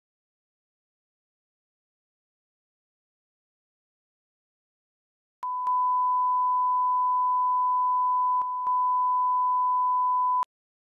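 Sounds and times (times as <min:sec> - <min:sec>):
electronic sine-wave beep: 0:05.4 - 0:10.5.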